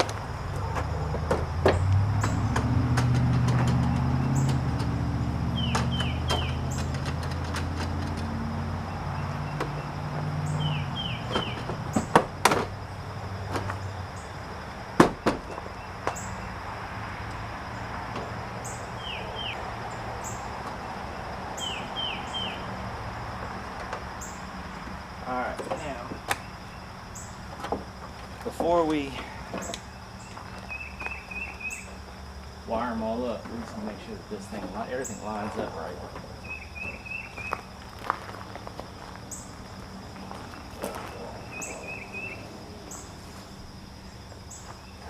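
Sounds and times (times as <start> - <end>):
vehicle engine hum: 0.0 - 45.0
clicks and knocks on car parts: 0.8 - 5.0, 11.3 - 12.8
bird chirping: 3.6 - 7.1, 8.2 - 12.2, 18.6 - 20.5, 21.5 - 22.8, 29.2 - 32.1, 34.5 - 37.8, 39.3 - 45.0.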